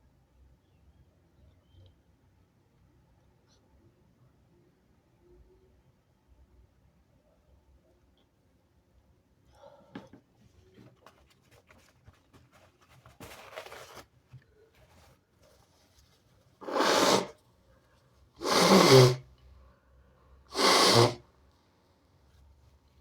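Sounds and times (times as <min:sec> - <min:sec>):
person sneezing harshly: 0:16.6 - 0:17.4, 0:18.4 - 0:19.2, 0:20.5 - 0:21.2.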